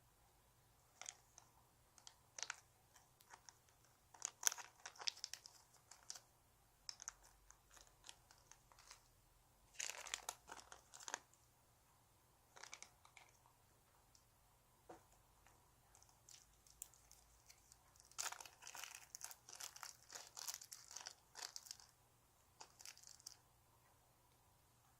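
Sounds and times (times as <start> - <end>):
squishy toy crinkling: 2.0 - 6.2, 9.7 - 11.3, 12.5 - 13.4, 15.9 - 21.9, 22.6 - 23.4.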